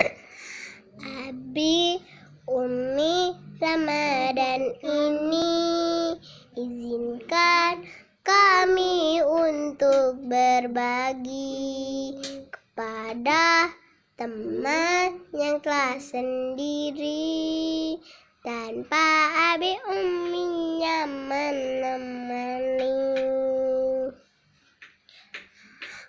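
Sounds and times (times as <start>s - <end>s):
girl singing: 0.8s - 24.2s.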